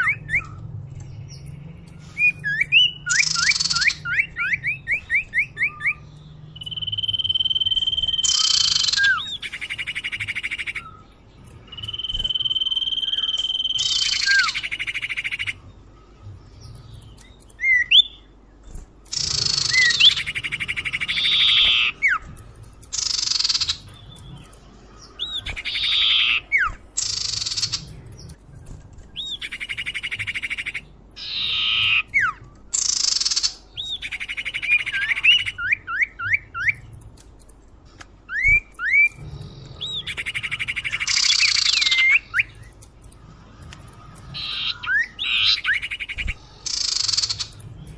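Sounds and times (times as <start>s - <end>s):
bird whistling and rasping: 0.0s - 0.6s, 2.1s - 6.0s, 11.7s - 15.6s, 19.1s - 22.3s, 25.2s - 27.9s, 29.2s - 36.9s, 38.3s - 39.2s, 39.8s - 42.7s, 44.3s - 47.6s.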